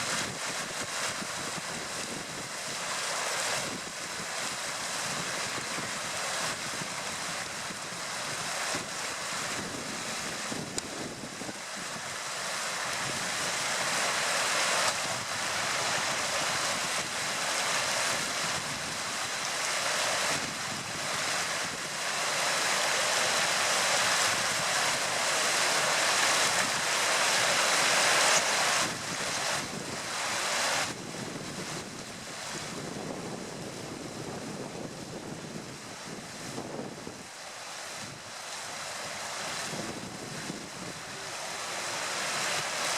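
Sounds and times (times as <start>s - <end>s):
steady outdoor rushing noise: 36.0s - 42.9s.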